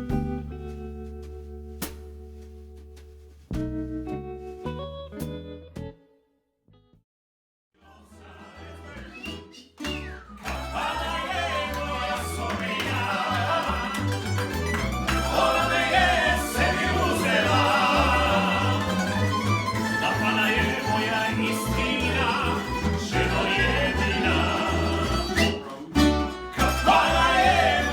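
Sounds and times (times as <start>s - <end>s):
bass line: 0.0s - 6.0s, 8.7s - 27.9s
voices singing: 7.8s - 27.9s
plucked strings: 9.8s - 27.9s.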